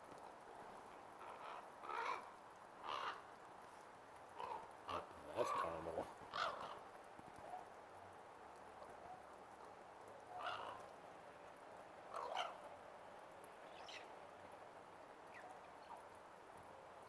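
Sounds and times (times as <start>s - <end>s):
raven calling: 1.2s - 3.4s, 4.4s - 6.9s, 10.3s - 10.9s, 12.1s - 12.7s.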